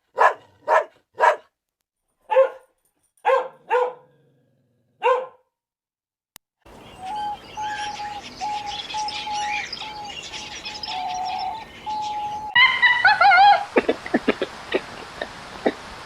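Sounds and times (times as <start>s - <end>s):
birds singing and chirping: 6.7s - 13.5s
faint outdoor hiss: 6.7s - 16.0s
animal call with wavering pitch: 7.0s - 13.8s.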